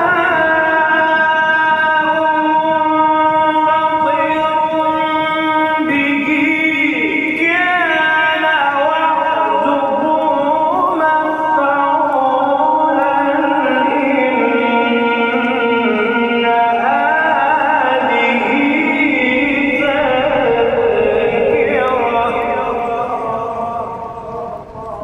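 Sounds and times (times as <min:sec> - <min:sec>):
man reciting melodically: 0:00.0 - 0:25.0.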